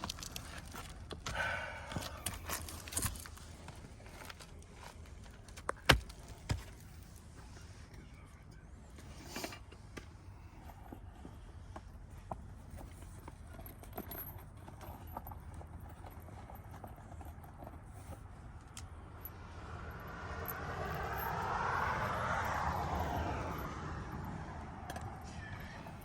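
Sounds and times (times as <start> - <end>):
passing vehicle: 18.4 - 26.0.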